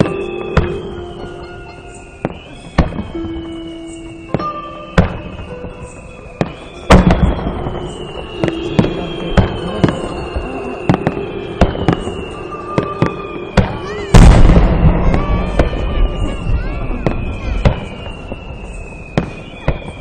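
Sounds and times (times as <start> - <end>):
background music: 0.0 - 16.0
fireworks bursting with bangs: 0.0 - 20.0.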